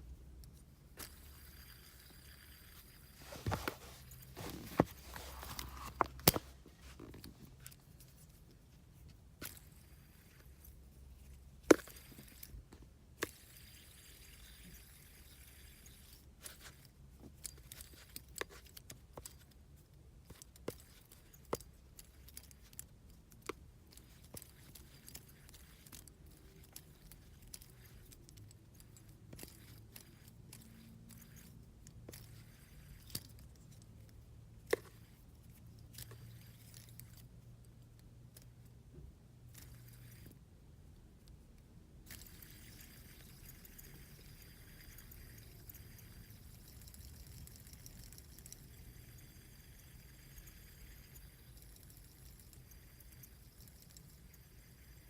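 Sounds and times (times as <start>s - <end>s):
metal fidget spinner clicks: 20.3s - 33.8s, 42.0s - 55.0s.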